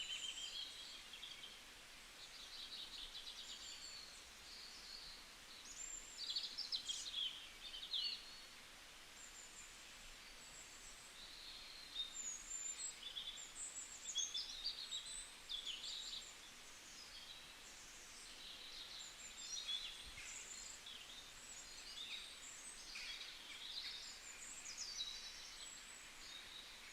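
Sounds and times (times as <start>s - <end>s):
faint outdoor hiss: 0.0s - 26.9s
small birds chirping: 0.0s - 26.9s.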